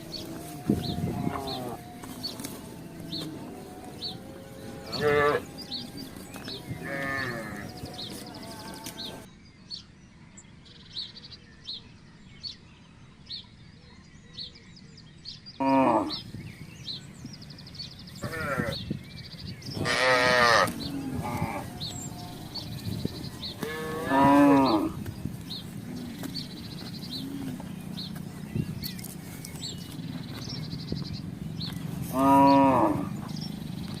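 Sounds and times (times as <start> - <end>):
cattle calling: 0.0 - 9.3, 18.1 - 18.8, 19.8 - 30.8, 31.4 - 34.0.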